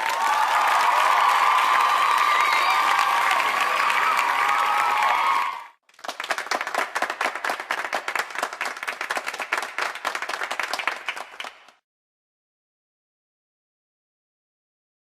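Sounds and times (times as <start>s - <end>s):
audience applause with cheering: 0.0s - 11.8s
crowd clapping: 0.0s - 11.8s.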